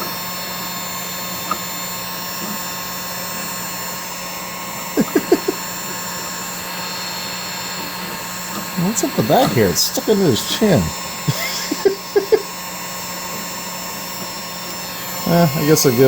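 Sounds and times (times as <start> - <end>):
fan motor hum: 0.0 - 16.0
heat gun blowing hiss: 4.9 - 16.0.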